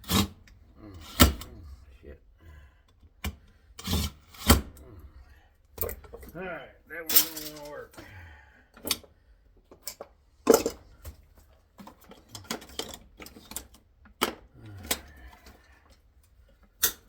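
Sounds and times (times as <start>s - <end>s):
metal scrap clinking and clattering: 7.1s - 7.9s.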